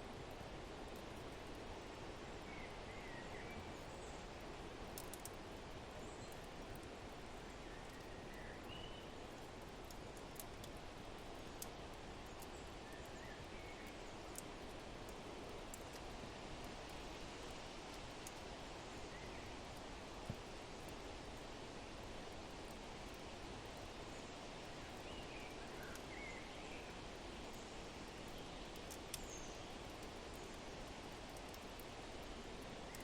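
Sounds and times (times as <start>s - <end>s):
wood fire crackling: 0.0s - 2.8s, 3.6s - 33.0s.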